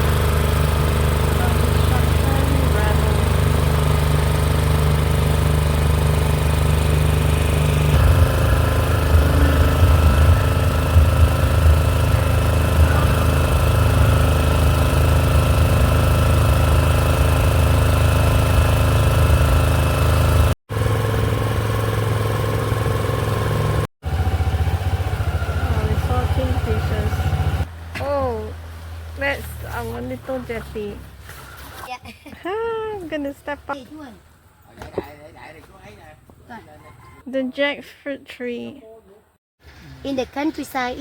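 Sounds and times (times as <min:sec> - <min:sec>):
boat engine droning: 0:00.0 - 0:31.6.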